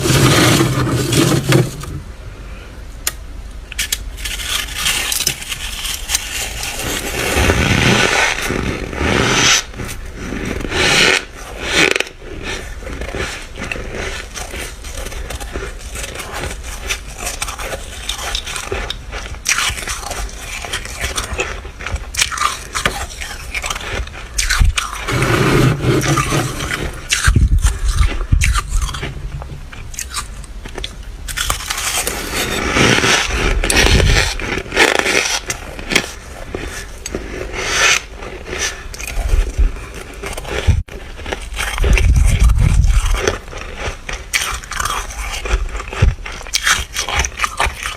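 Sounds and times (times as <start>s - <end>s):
scraping frost: 0.0s - 2.0s, 3.8s - 47.9s
crunching bites of frost: 3.8s - 29.2s.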